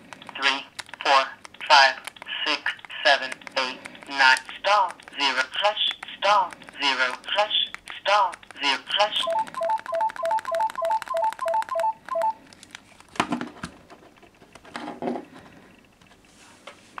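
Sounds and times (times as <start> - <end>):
phone alert beeps alternating pitch: 9.2 - 12.4.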